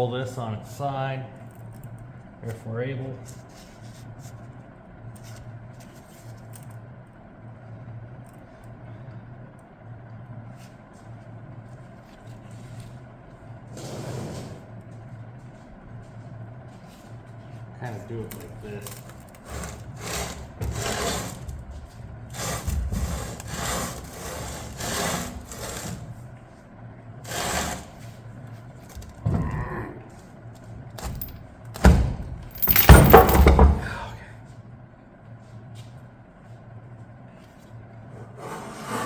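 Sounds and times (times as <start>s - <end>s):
steady low hum: 14.6s - 39.0s
loud metal clunk: 31.0s - 34.1s.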